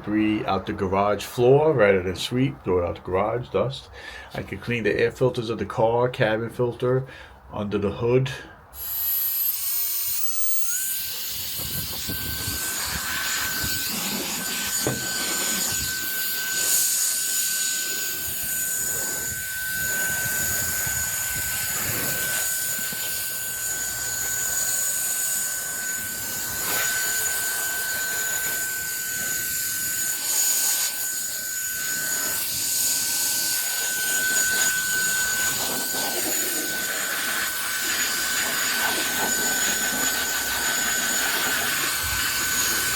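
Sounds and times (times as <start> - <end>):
air duster motor whine: 8.7 - 42.9.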